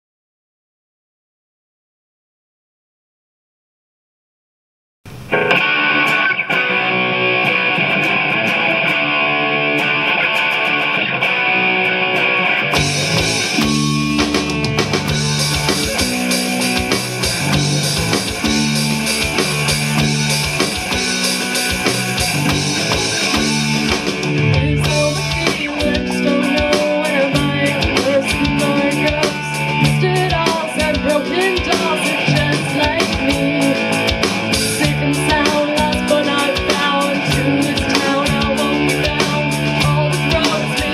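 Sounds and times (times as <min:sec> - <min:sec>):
drum kit: 0:05.1 - 0:09.0, 0:12.7 - 0:40.9
electric guitar: 0:05.1 - 0:40.9
rock band playing: 0:05.1 - 0:40.9.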